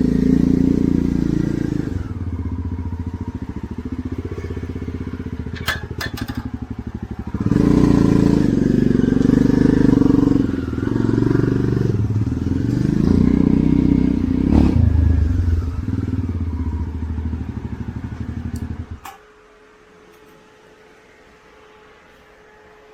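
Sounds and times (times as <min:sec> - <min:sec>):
motorcycle engine revving: 0:00.0 - 0:19.1.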